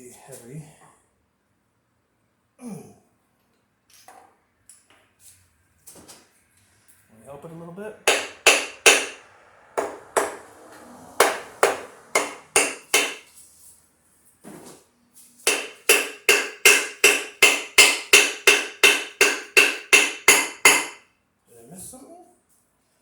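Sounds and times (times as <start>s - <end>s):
hammer blows ringing on cast iron: 8.0s - 10.5s, 11.2s - 13.3s, 15.4s - 21.0s.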